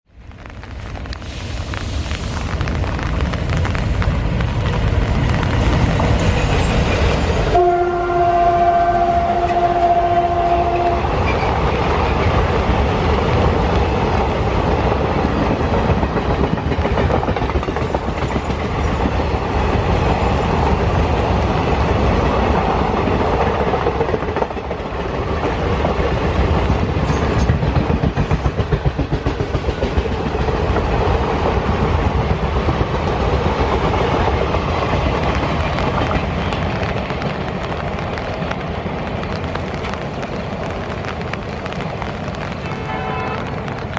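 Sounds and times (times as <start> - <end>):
train wheels rumbling on rails: 0.1 - 43.9
train horn blast: 7.5 - 11.2, 42.6 - 43.7.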